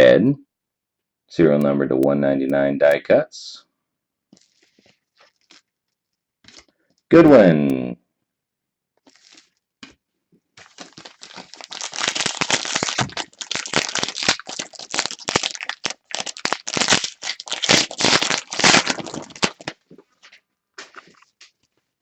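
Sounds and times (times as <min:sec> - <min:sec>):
plastic foil wrapper crinkling: 0:04.4 - 0:06.7, 0:09.1 - 0:09.6, 0:10.6 - 0:21.8.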